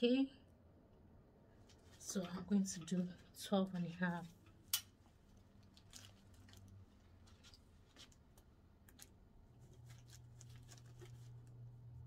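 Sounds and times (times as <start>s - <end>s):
low steady hum: 0.0s - 12.0s
hands handling tape: 4.4s - 11.7s.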